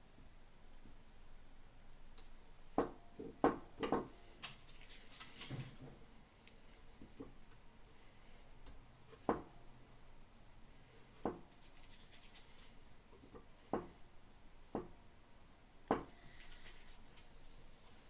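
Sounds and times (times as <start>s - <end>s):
hard objects knocking: 2.8s - 4.2s.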